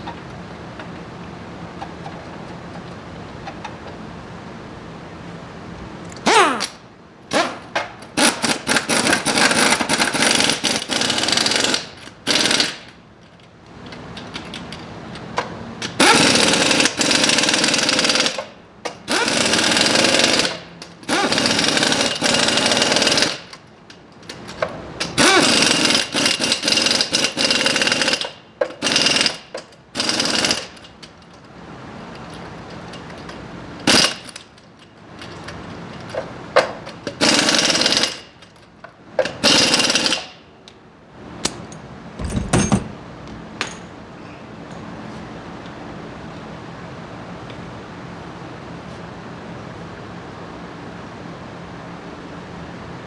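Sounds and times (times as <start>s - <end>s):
pneumatic impact wrench hammering: 6.2s - 13.0s, 15.4s - 23.6s, 24.3s - 31.2s, 33.0s - 34.6s, 36.1s - 38.6s, 39.2s - 40.4s.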